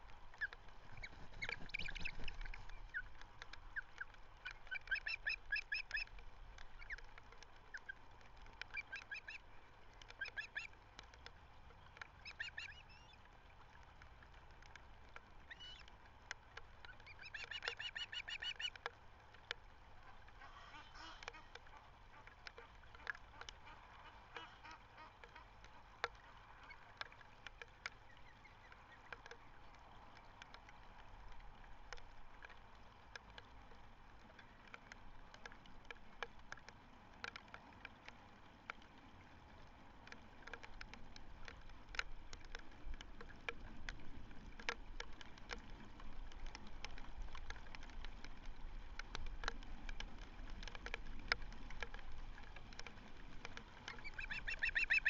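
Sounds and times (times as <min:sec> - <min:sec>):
distant bird calls: 0:00.4 - 0:06.0, 0:54.0 - 0:55.0.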